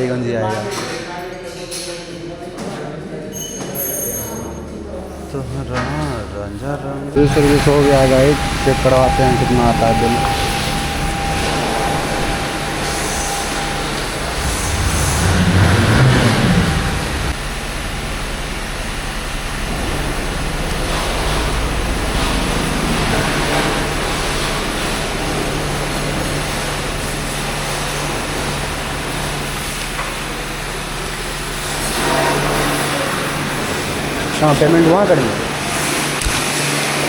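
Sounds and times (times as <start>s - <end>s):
vehicle engine and traffic hum: 5.4s - 27.7s.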